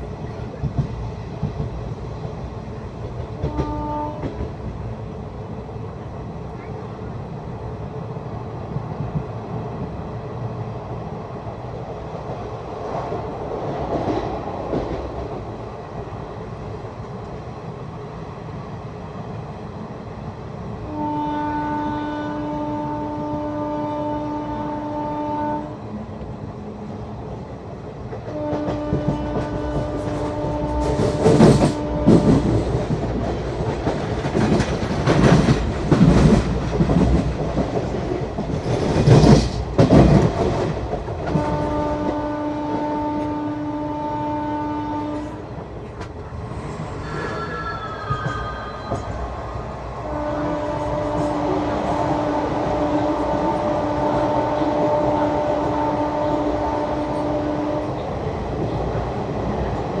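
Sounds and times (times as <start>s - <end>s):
train rumble and wheel clatter: 0.0s - 60.0s
locomotive horn blasts: 3.4s - 4.4s, 20.9s - 26.0s, 28.3s - 32.6s, 41.3s - 45.5s, 50.0s - 58.1s.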